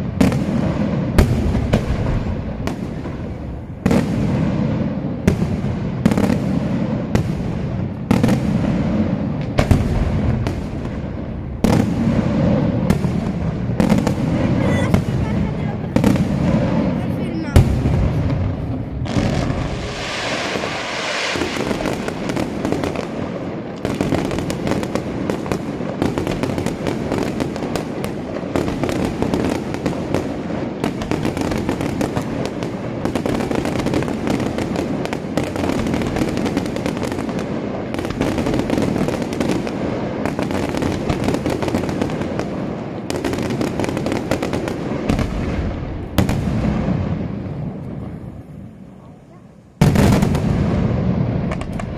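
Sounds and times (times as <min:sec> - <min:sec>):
fireworks bursts and bangs: 0:00.0 - 0:51.9
fireworks hissing shower: 0:19.4 - 0:22.2.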